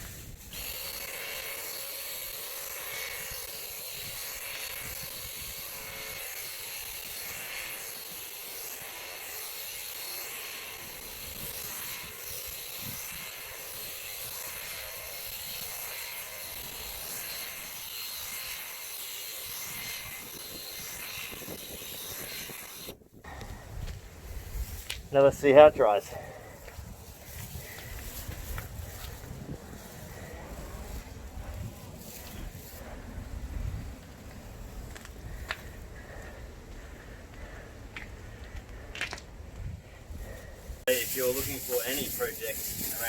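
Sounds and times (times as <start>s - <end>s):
paint sprayer buzzing hiss: 0.0s - 23.0s, 40.4s - 43.0s.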